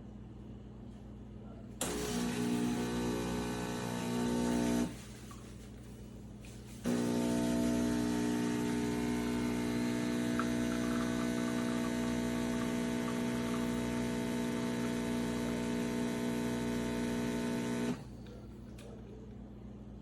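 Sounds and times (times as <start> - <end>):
espresso machine pump humming: 1.8 - 5.4, 6.8 - 18.4.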